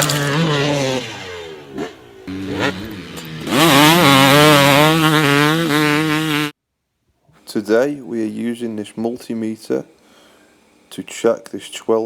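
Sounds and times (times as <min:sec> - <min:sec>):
engine revving: 0:00.0 - 0:06.5.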